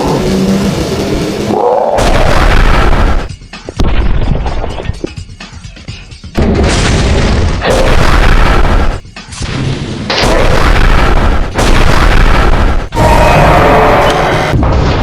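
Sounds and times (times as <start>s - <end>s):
heavy explosion blasts: 1.9s - 4.5s, 6.4s - 9.0s, 10.1s - 15.0s.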